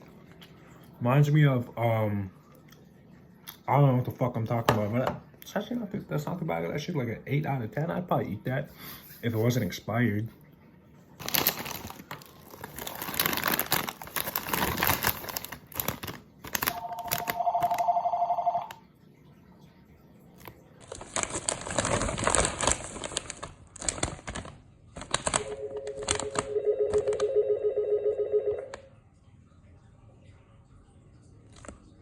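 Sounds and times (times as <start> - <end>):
snack packaging crinkling: 11.2 - 18.8, 20.4 - 27.2, 31.5 - 31.9
electronic ringing tones: 16.7 - 18.8, 25.5 - 28.8.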